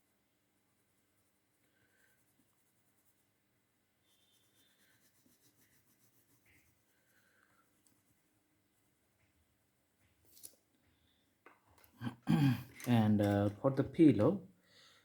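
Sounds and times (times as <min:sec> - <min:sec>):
faint scratching on paper: 0:00.0 - 0:09.4.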